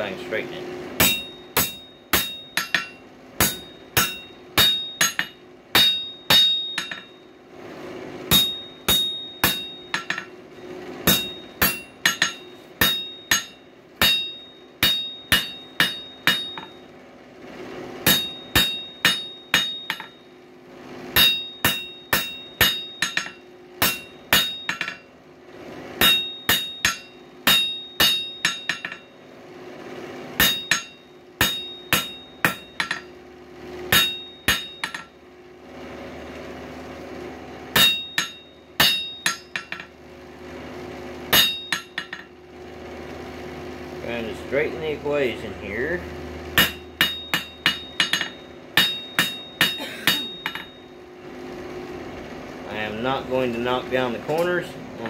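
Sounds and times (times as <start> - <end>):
steady low hum: 0.0 - 55.0
hammer ringing on anvil: 1.0 - 7.4, 8.3 - 16.9, 18.0 - 20.3, 21.1 - 25.1, 26.0 - 29.3, 30.4 - 33.2, 33.9 - 35.2, 37.7 - 40.0, 41.3 - 42.4, 46.6 - 51.1.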